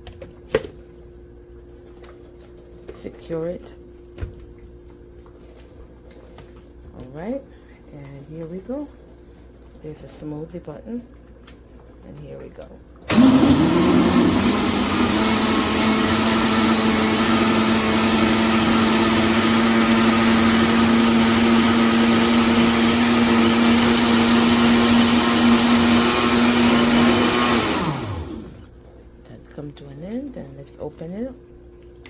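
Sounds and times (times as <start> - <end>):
blender motor running: 13.1 - 28.7.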